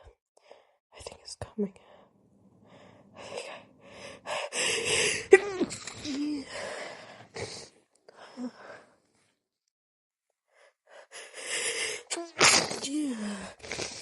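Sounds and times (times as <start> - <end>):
woman gasping breaths: 2.6 - 5.4, 6.4 - 8.9
woman stifled sneeze: 12.1 - 13.0.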